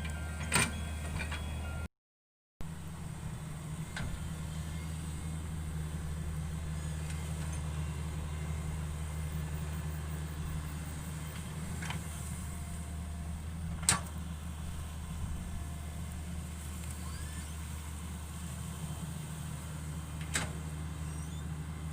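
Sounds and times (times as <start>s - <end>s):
excavator diesel engine running: 0.0s - 1.9s, 2.6s - 21.9s.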